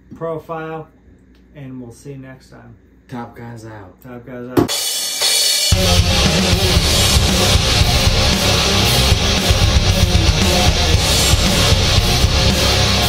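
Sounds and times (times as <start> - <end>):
rock music with electric guitar: 4.7 - 13.0.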